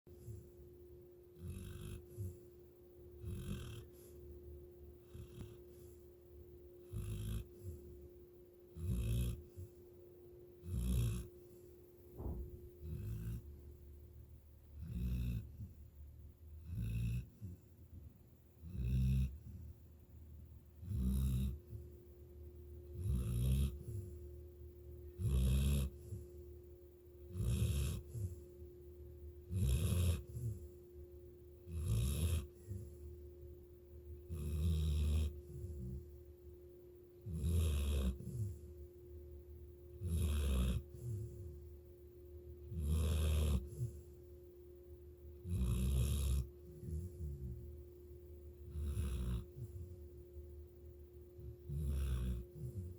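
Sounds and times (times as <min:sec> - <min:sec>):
faint steady hum: 0:00.0 - 0:52.9
person snoring: 0:01.4 - 0:02.4, 0:03.2 - 0:04.1, 0:05.1 - 0:05.8, 0:06.9 - 0:07.8, 0:08.8 - 0:09.8, 0:10.6 - 0:11.3, 0:12.8 - 0:13.5, 0:14.8 - 0:15.7, 0:16.6 - 0:17.6, 0:18.6 - 0:19.6, 0:20.8 - 0:21.6, 0:23.0 - 0:24.1, 0:25.2 - 0:26.2, 0:27.3 - 0:28.4, 0:29.5 - 0:30.6, 0:31.7 - 0:33.0, 0:34.3 - 0:36.0, 0:37.3 - 0:38.6, 0:40.0 - 0:41.5, 0:42.7 - 0:44.0, 0:45.4 - 0:47.6, 0:48.7 - 0:49.9, 0:51.6 - 0:52.9.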